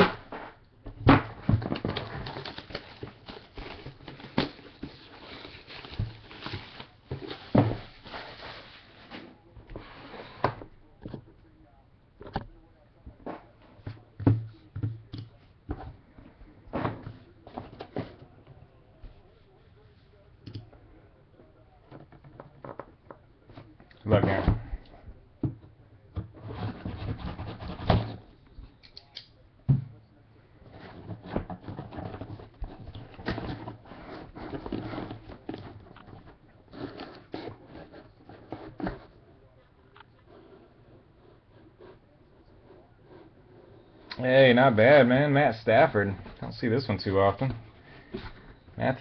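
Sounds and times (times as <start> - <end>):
packaging crinkling and rustling: 1.5 - 9.2
sharp clicks and snaps: 28.8 - 29.3.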